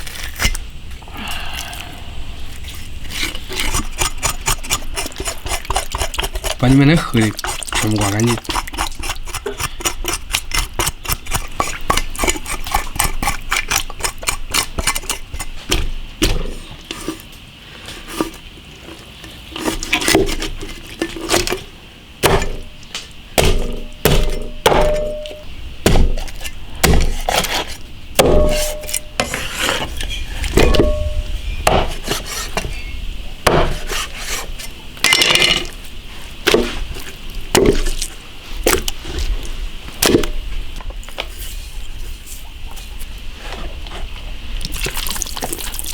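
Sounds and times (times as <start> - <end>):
knife scraping fish: 2.5 - 15.6, 16.8 - 21.5, 26.2 - 27.8, 28.4 - 31.0, 31.8 - 32.9, 33.5 - 34.8
knife blade knocking: 28.2 - 29.3.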